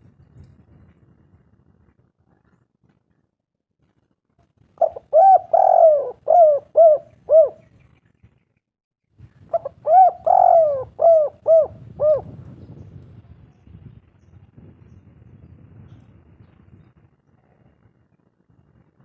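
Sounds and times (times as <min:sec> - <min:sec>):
dove cooing: 0:04.8 - 0:07.7, 0:09.5 - 0:12.4.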